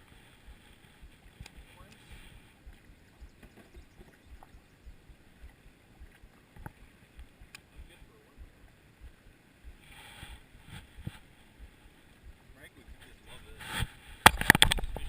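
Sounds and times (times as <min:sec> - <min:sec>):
wind buffeting microphone: 0:00.0 - 0:15.0
faint clicks: 0:00.5 - 0:09.8.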